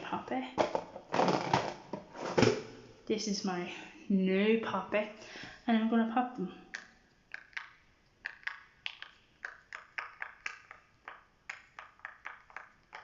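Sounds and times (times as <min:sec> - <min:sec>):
fidget toy bubbles popping: 0:06.8 - 0:13.0.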